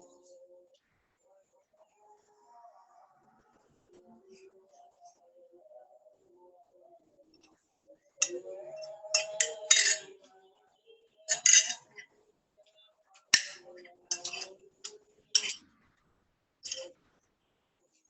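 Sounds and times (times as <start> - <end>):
dishes and cutlery clinking: 9.1 - 10.2, 11.3 - 12.1, 13.2 - 15.7, 16.6 - 17.0.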